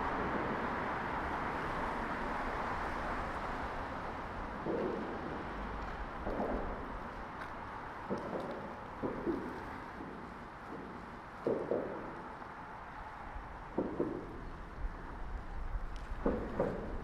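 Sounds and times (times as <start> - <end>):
passing vehicle: 0.0 - 11.2.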